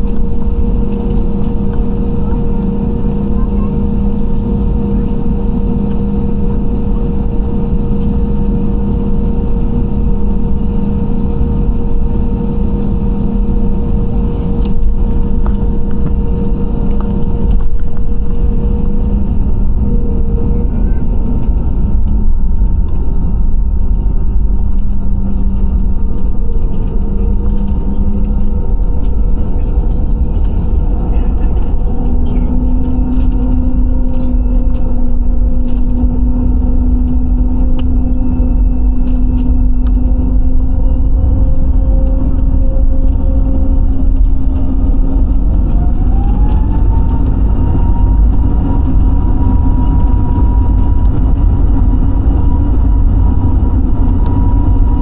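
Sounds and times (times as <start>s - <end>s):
airliner engines rumbling and whining: 0.0s - 55.0s.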